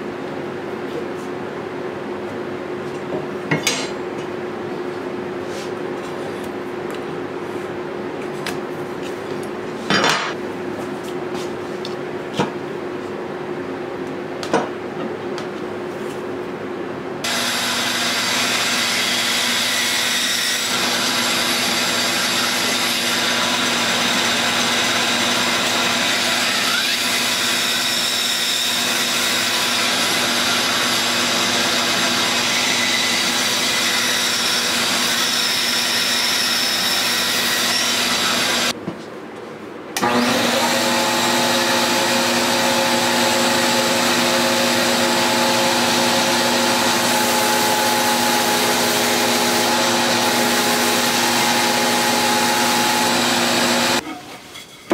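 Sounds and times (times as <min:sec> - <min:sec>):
power tool motor running: 0:17.2 - 0:38.7, 0:40.0 - 0:54.0.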